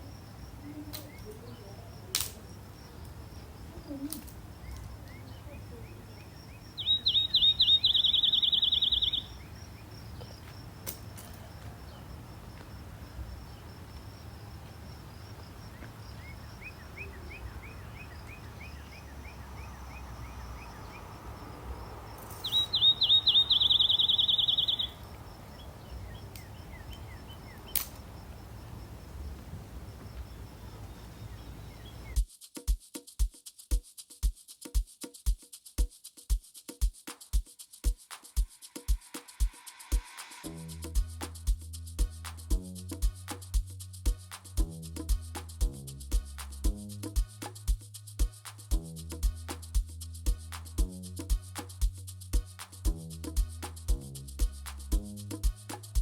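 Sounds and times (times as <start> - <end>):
songbird trilling song: 0.0 - 32.2
rapid bird chirps: 2.7 - 12.5, 13.1 - 28.8, 30.2 - 32.2.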